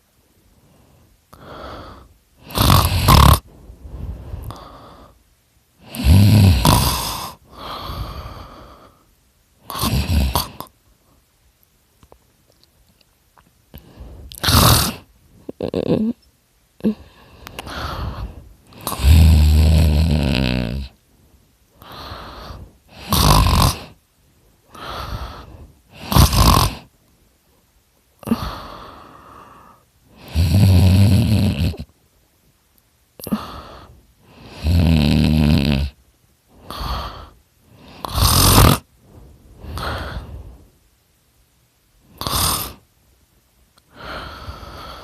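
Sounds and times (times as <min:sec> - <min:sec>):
hissy breaths: 0:00.0 - 0:11.4, 0:13.6 - 0:15.6, 0:16.8 - 0:30.7, 0:33.1 - 0:43.0, 0:43.8 - 0:45.0
man snoring loudly: 0:01.4 - 0:03.4, 0:05.8 - 0:08.2, 0:09.7 - 0:10.7, 0:14.3 - 0:16.2, 0:18.8 - 0:21.0, 0:21.8 - 0:24.0, 0:24.8 - 0:26.9, 0:30.2 - 0:31.9, 0:33.2 - 0:36.0, 0:36.7 - 0:38.9, 0:42.2 - 0:42.8.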